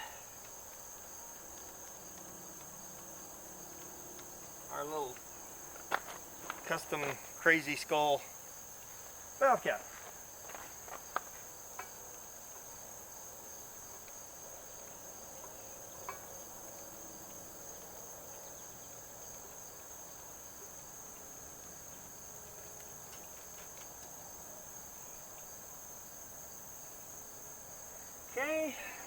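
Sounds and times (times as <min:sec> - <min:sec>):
insects trilling: 0:00.0 - 0:29.0.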